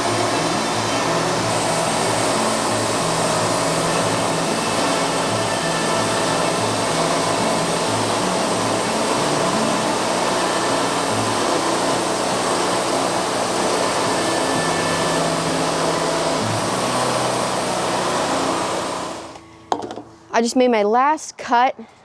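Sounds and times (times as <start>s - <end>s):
band sawmill whirring: 0.0s - 19.4s.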